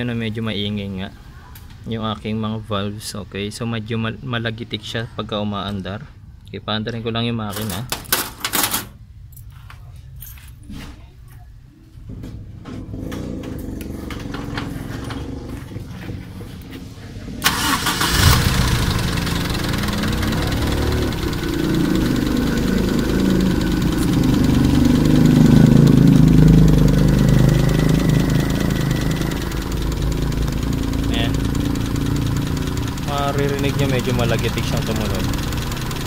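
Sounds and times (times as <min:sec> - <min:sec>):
car engine cranking and running: 0:13.0 - 0:16.7, 0:17.4 - 0:36.0
valvetrain ticking: 0:17.4 - 0:36.0.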